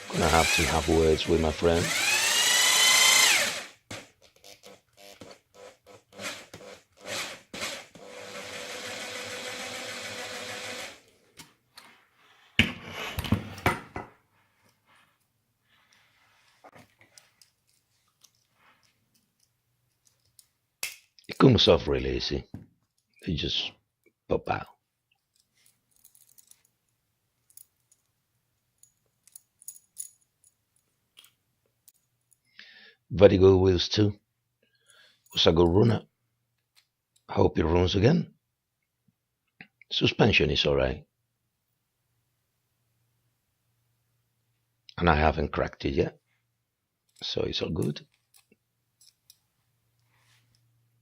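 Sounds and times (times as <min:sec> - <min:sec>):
electric drill drilling: 0:00.0 - 0:11.0.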